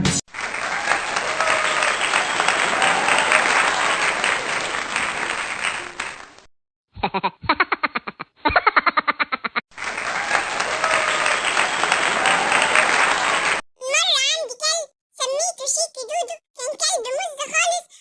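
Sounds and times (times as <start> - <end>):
applause-like hiss: 0.3 - 6.5, 9.8 - 13.6.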